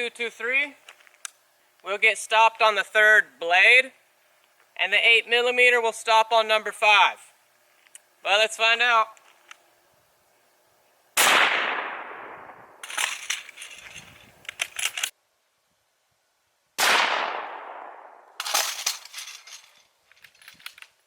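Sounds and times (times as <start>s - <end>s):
rifle shots echoing: 11.2s - 13.1s, 16.8s - 18.6s
light metallic clicks and rattles: 12.8s - 15.1s, 18.4s - 21.0s.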